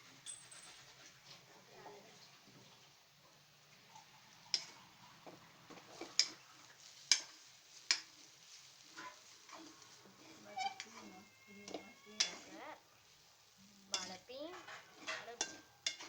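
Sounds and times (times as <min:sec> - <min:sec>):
kitchen utensils clicking and knocking: 0:09.0 - 0:12.8, 0:13.9 - 0:16.0.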